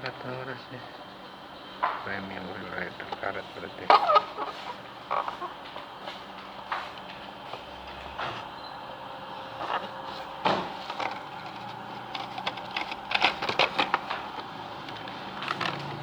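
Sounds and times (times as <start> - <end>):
plastic packaging handled: 9.4 - 16.0.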